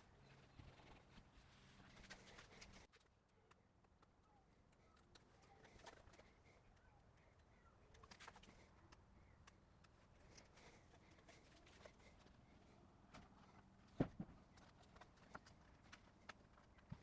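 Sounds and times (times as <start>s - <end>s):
faint clicks and taps: 2.0s - 12.3s
distant bird chirps: 4.1s - 12.8s.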